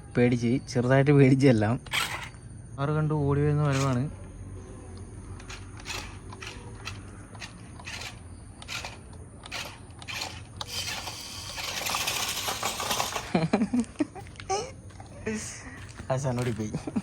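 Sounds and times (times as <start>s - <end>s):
electric motor and gears: 1.8s - 2.4s, 3.6s - 4.1s, 5.0s - 13.6s
clicks and scrapes from tyres: 1.9s - 2.4s, 5.3s - 13.4s
hissing rush: 10.6s - 13.3s.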